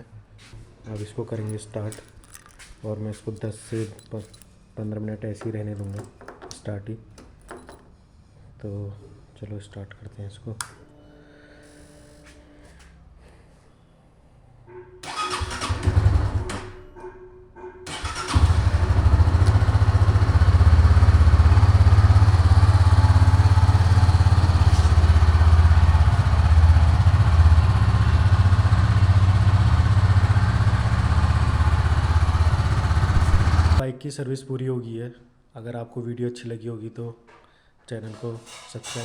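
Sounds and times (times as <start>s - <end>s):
electric starter cranking: 15.0s - 16.6s, 17.9s - 33.8s
motorcycle engine idling: 17.9s - 33.8s.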